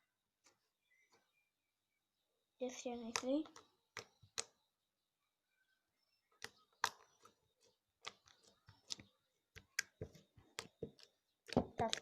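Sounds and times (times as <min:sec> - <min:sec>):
slime clicking and popping: 0:06.4 - 0:07.3, 0:08.0 - 0:12.0.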